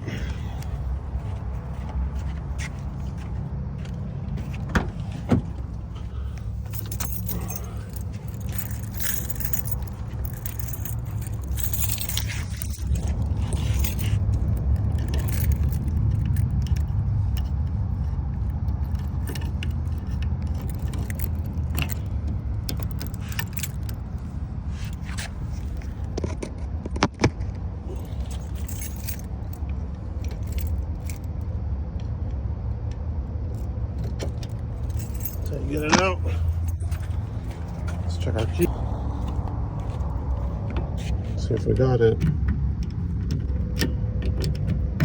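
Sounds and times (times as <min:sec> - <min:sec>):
steady low rumble: 0:00.0 - 0:43.7
lock-picking tools clinking at a lock: 0:06.1 - 0:24.2, 0:27.9 - 0:31.4.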